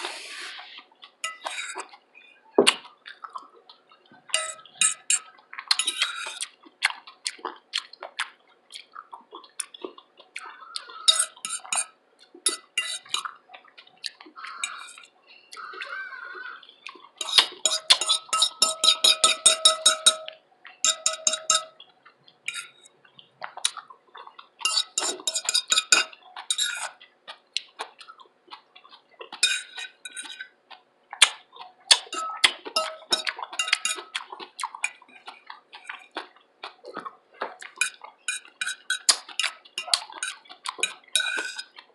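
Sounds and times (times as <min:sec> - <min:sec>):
person chewing vegetables: 0:00.0 - 0:41.9
utensils clinking on dishes: 0:01.2 - 0:01.9, 0:04.3 - 0:06.5, 0:11.0 - 0:13.3, 0:14.4 - 0:15.7, 0:17.2 - 0:21.8, 0:22.5 - 0:22.9, 0:24.6 - 0:27.0, 0:29.4 - 0:30.5, 0:31.9 - 0:36.0, 0:37.6 - 0:41.8.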